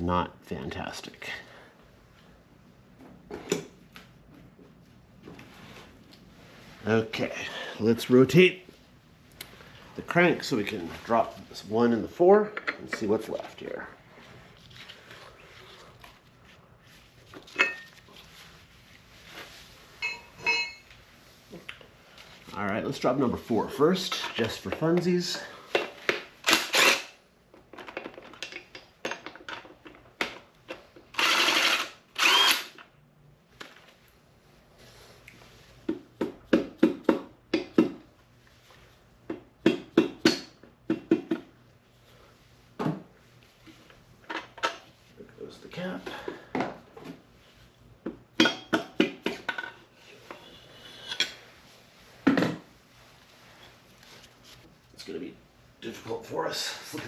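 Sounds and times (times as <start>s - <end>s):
metal engine parts clinking: 20.0s - 20.9s
power tool whirring: 26.5s - 27.1s, 31.1s - 32.8s.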